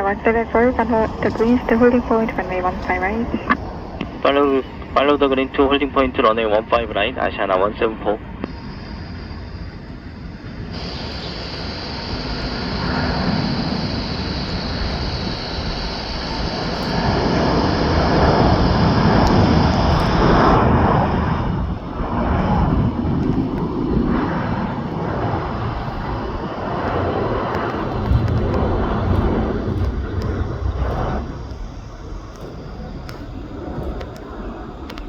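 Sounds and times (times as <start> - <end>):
jet engines rumbling: 0.0 - 35.0
high hiss: 8.5 - 20.4.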